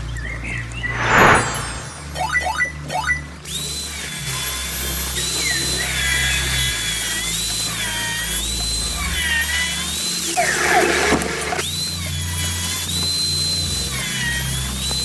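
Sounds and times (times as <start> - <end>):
power tool cutting steel pipe: 3.8 - 15.0.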